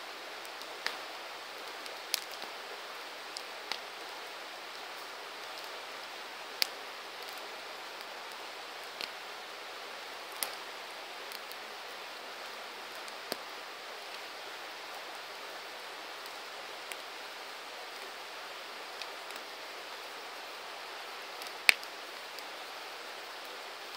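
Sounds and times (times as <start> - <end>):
campfire hissing: 0.0 - 23.9
faint fire crackles: 0.0 - 23.9
wood crackling pops: 1.7 - 2.5, 21.4 - 22.0.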